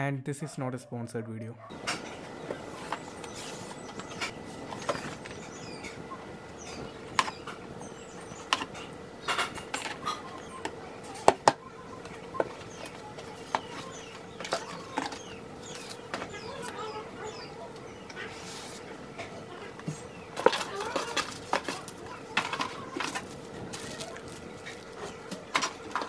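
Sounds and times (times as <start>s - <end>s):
faint hum: 1.6s - 26.0s
handling clicks and knocks: 19.8s - 26.0s.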